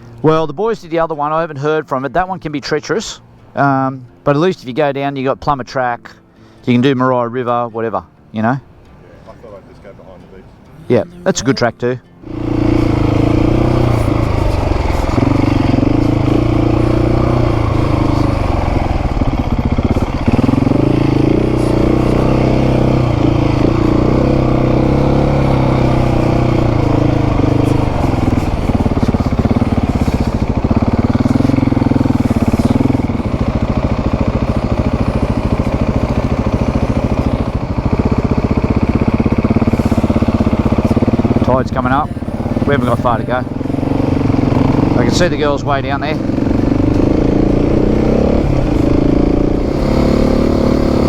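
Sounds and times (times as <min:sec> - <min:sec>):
motorcycle engine revving: 0:10.9 - 0:51.0.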